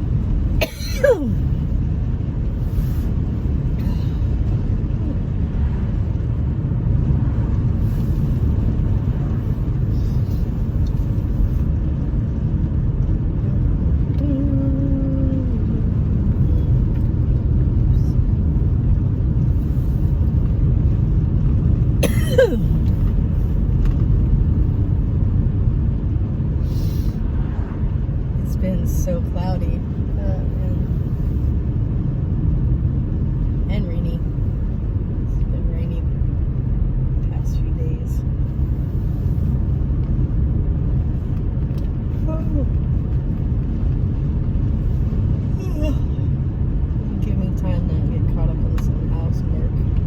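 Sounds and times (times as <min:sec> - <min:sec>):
low rumble: 0:00.0 - 0:50.0
person sneezing: 0:00.6 - 0:01.4, 0:22.0 - 0:22.8.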